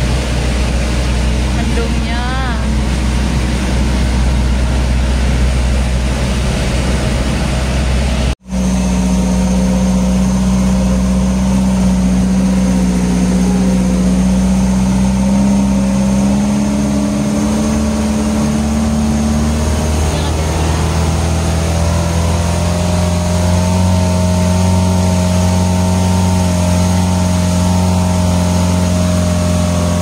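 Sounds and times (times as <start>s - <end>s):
truck engine running: 0.0s - 30.0s.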